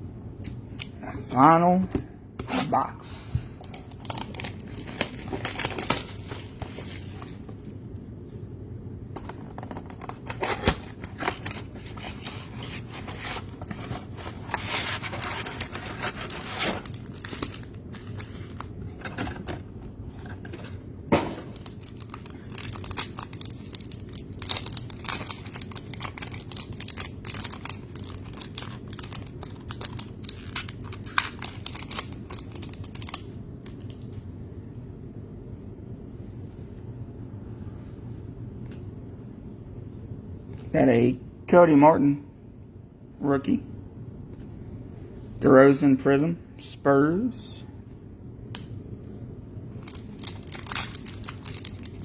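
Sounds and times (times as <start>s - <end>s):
steady low hum: 0.0s - 52.0s
plastic wrappers tearing and crinkling: 3.6s - 7.5s, 10.3s - 19.3s, 21.2s - 34.0s, 49.7s - 52.0s.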